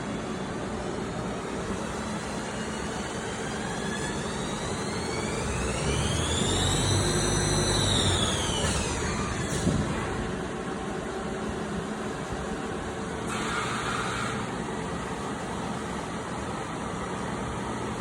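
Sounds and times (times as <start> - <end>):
lathe spindle whine: 0.0 - 10.5
steady machine hum: 0.0 - 18.0.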